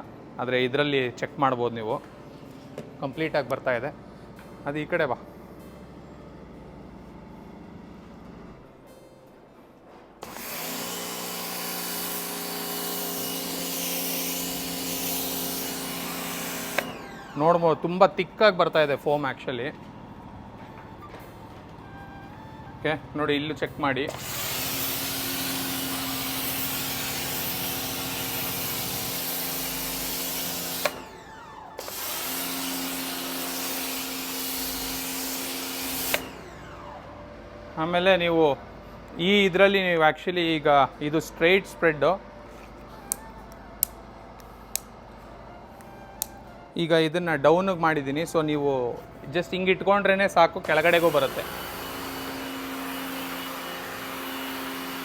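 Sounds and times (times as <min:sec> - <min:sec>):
pressure washer motor hum: 0:10.2 - 0:46.5, 0:48.9 - 0:55.0
foam lance spraying hiss: 0:24.1 - 0:31.0, 0:50.7 - 0:53.4
hiss of spraying foam: 0:50.7 - 0:55.0.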